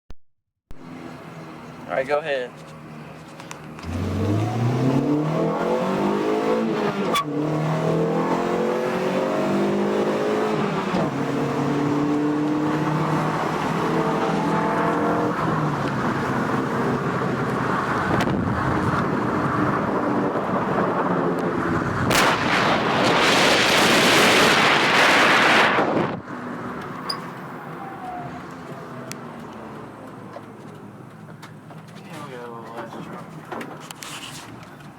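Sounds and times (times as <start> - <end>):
car engine accelerating: 2.8 - 31.9
loud rushing noise: 22.0 - 26.2.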